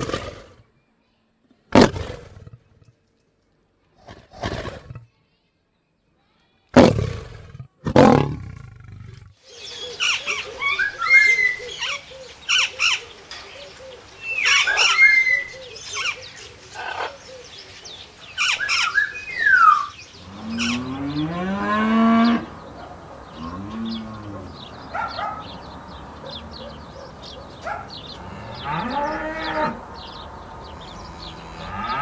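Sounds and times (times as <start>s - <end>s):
high squeaky chirping animal calls: 18.5s - 32.0s
brief roar: 20.2s - 32.0s
cow mooing: 20.2s - 32.0s.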